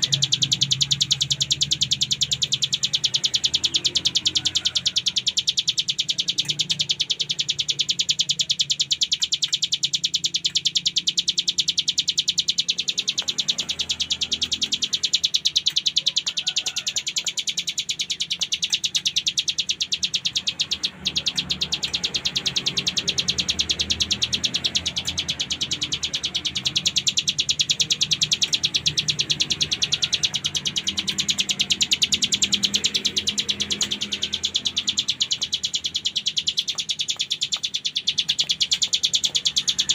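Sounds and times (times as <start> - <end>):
bird singing a fast rattling trill: 0.0 - 39.9.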